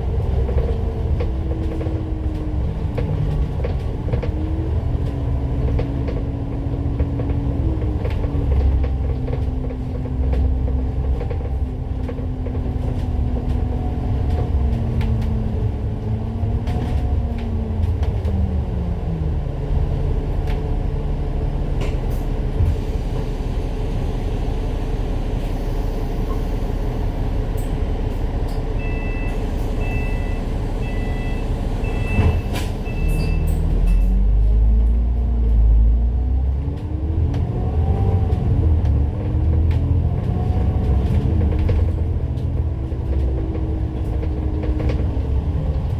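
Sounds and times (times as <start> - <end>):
bus engine: 0.0 - 45.9
short electronic beeps: 28.8 - 34.0.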